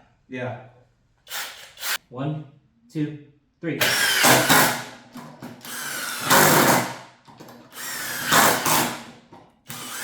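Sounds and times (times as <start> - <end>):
impact driver driving screws: 1.3 - 2.0, 3.8 - 10.0.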